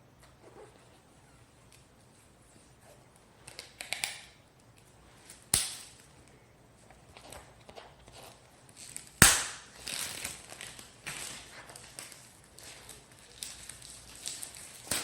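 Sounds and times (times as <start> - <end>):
cellophane wrapper crinkling: 8.2 - 15.0.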